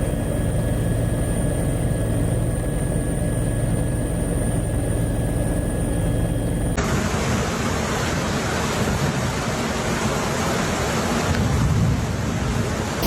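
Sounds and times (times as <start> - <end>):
thin high whine: 0.0 - 6.8
engine drone: 0.0 - 7.5.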